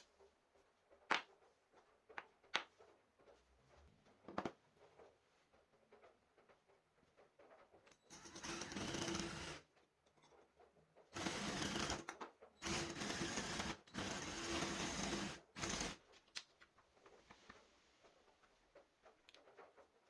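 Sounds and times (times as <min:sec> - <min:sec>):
power tool motor bursts: 0:11.2 - 0:12.0, 0:12.6 - 0:16.0
faint clicks and handling: 0:16.1 - 0:20.0.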